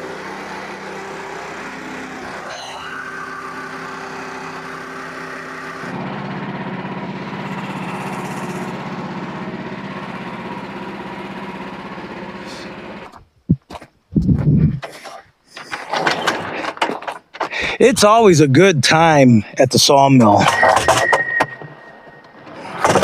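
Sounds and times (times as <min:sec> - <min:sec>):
small gasoline engine running: 0:00.0 - 0:13.1, 0:22.3 - 0:23.0.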